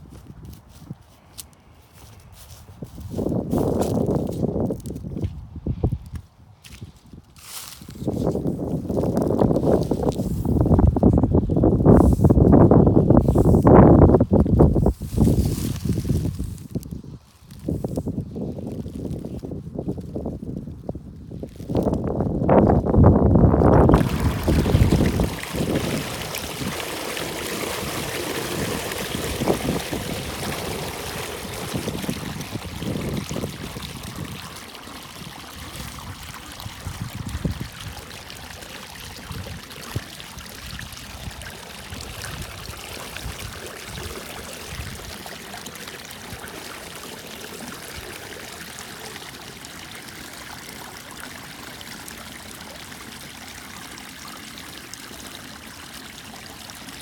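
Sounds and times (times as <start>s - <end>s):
wind buffeting microphone: 2.3s - 46.5s
water rushing through drain: 23.4s - 57.0s.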